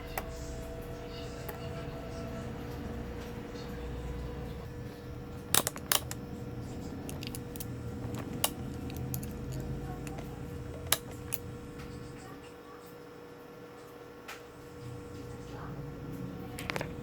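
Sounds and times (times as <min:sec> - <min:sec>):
faint steady hum: 0:00.0 - 0:17.0
metal tools clicking: 0:07.1 - 0:10.2.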